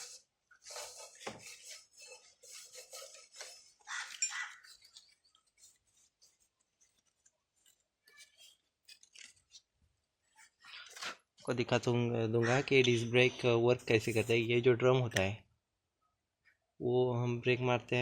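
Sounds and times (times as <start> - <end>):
small metal parts clinking: 4.1 - 5.2.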